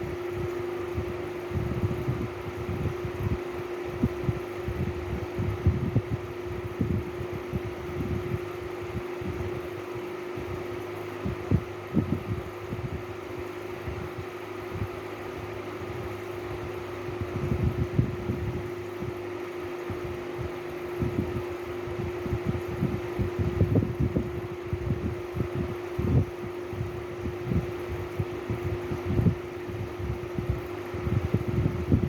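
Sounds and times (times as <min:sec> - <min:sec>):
machine hum: 0:00.0 - 0:32.0.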